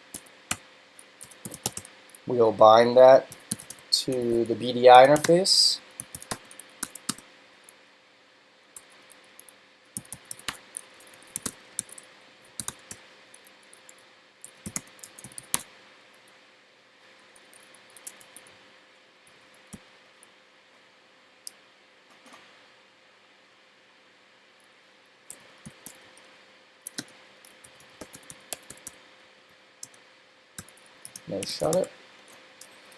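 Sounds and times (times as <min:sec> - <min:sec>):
typing on computer keyboard: 0:01.0 - 0:01.9, 0:03.3 - 0:04.4, 0:05.0 - 0:05.4, 0:06.0 - 0:07.2, 0:08.8 - 0:15.7, 0:17.5 - 0:18.4, 0:25.3 - 0:26.1, 0:26.9 - 0:29.0, 0:30.6 - 0:31.9.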